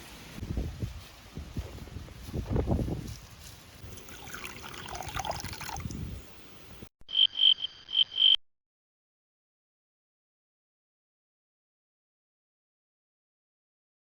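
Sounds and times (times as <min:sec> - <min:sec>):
rustling: 0:00.0 - 0:05.1
low wind rumble: 0:00.0 - 0:06.9
small animal chirping: 0:07.1 - 0:08.4.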